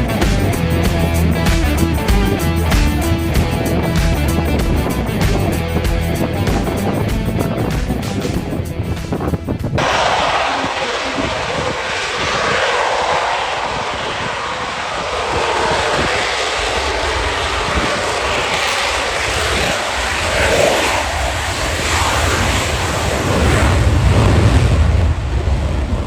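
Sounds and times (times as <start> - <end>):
aircraft flying past: 0.0 - 26.0.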